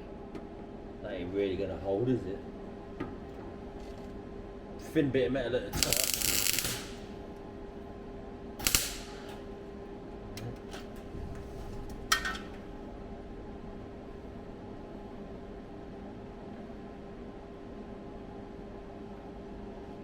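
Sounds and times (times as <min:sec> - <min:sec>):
steady low hum: 0:00.0 - 0:20.0
sharp welding tacks: 0:05.8 - 0:07.3, 0:08.6 - 0:09.5
welder crackling: 0:05.8 - 0:07.4, 0:08.6 - 0:09.6.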